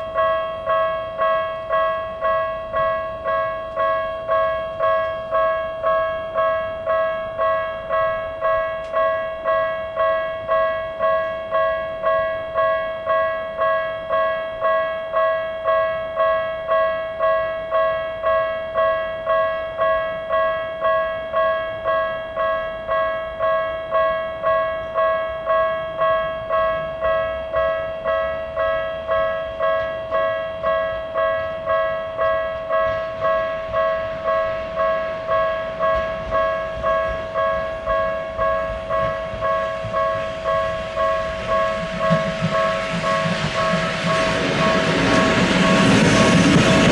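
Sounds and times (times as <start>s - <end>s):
level-crossing warning bell: 0.0s - 46.9s
train rushing: 31.1s - 46.9s.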